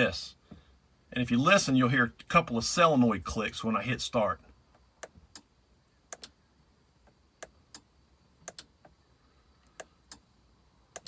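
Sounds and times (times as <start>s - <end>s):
faint solenoid clicks: 7.4s - 9.0s.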